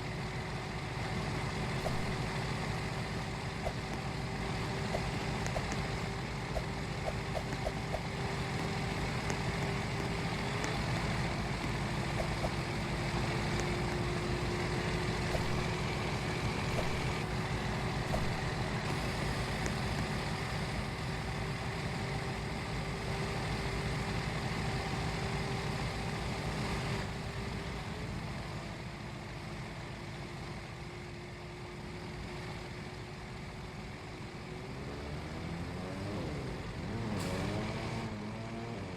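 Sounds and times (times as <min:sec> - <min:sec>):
vehicle engine rumble: 0:00.0 - 0:38.9.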